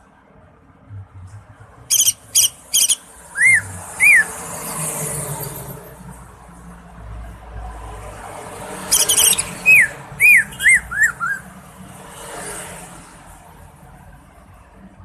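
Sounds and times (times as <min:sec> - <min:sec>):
bird chattering: 0:01.9 - 0:04.4, 0:08.8 - 0:11.4
bird whistling: 0:01.9 - 0:04.4, 0:08.9 - 0:11.5.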